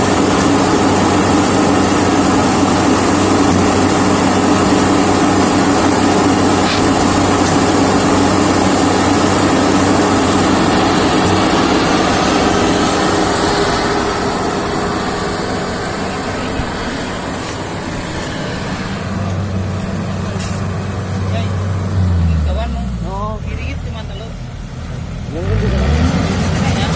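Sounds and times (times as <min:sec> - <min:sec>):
combine harvester engine running: 0:00.0 - 0:26.9.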